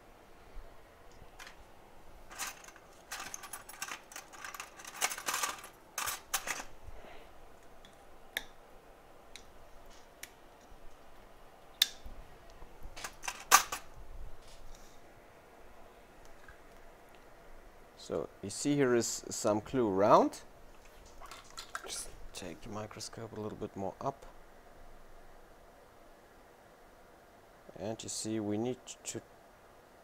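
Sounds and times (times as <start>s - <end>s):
metal tools clicking and scratching: 2.3s - 6.7s, 13.0s - 13.9s.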